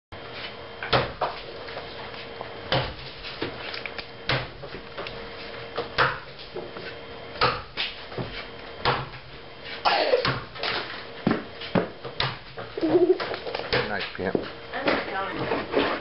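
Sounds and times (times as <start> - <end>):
axe chopping into wood: 7.4 - 7.8, 8.8 - 9.2.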